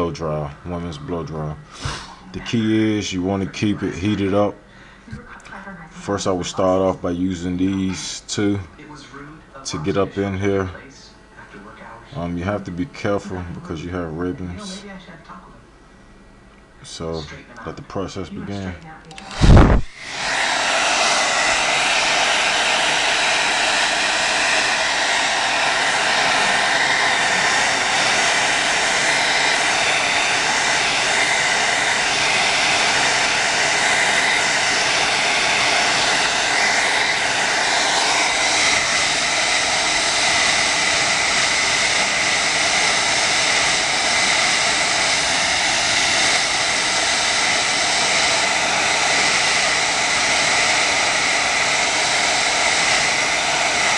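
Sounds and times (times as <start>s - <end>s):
blow dryer running: 0.0s - 5.2s, 19.1s - 53.9s.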